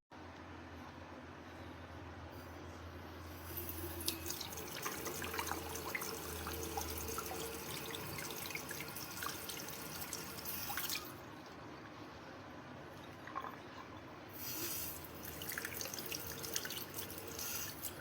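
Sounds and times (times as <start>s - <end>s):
faucet water splashing into sink: 3.6s - 11.2s, 14.4s - 18.0s
water dripping: 3.9s - 11.2s, 15.0s - 18.0s.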